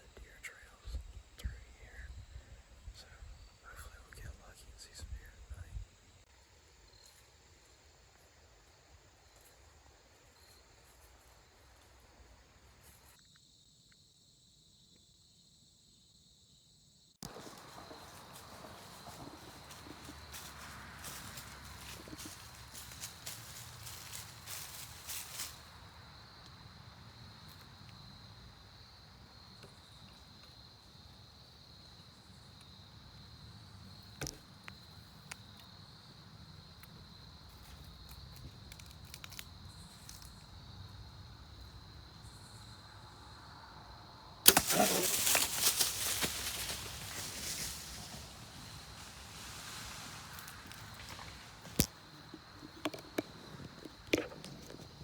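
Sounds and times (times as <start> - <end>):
high insect drone: 0.0 - 55.0
animal crashing through brush: 17.2 - 25.7, 44.5 - 52.0.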